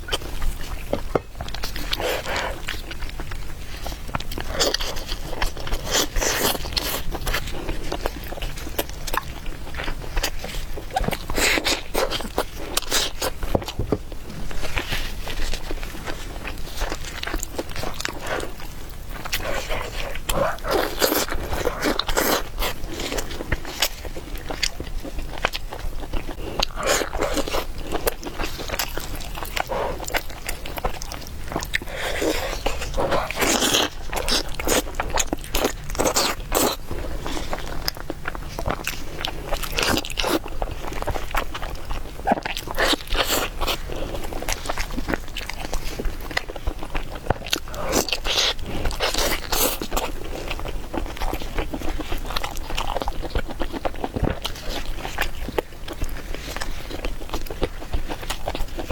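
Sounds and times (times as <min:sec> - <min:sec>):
person biting and chewing: 0:14.4 - 0:56.0.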